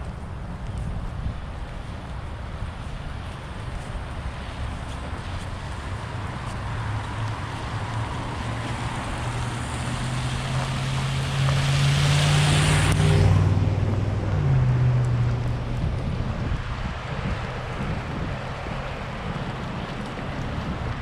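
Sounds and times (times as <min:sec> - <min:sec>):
vehicle driving past: 0:05.5 - 0:21.0.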